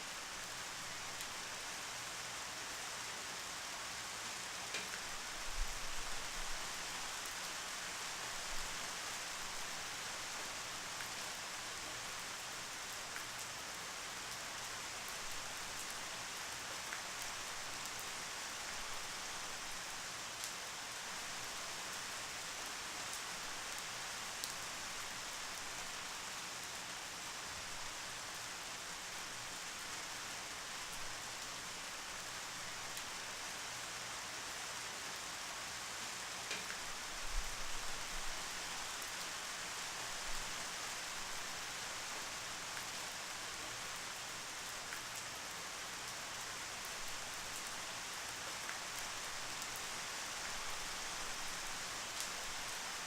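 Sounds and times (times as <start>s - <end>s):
steady rain hiss: 0.0s - 53.0s
rain drop ticks: 4.7s - 5.0s, 36.4s - 36.9s.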